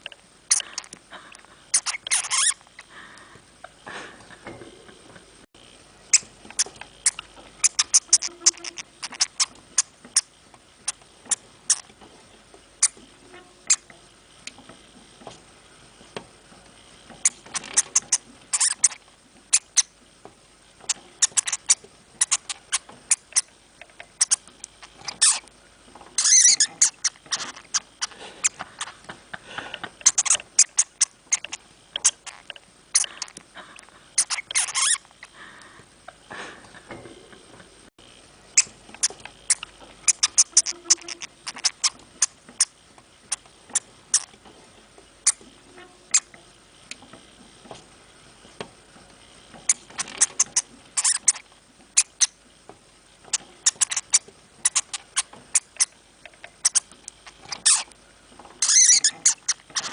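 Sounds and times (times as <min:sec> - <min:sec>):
hamster clicking and rustling: 0:06.1 - 0:13.0, 0:16.8 - 0:19.9, 0:20.8 - 0:29.2, 0:29.8 - 0:33.5, 0:38.5 - 0:45.5, 0:46.1 - 0:59.9.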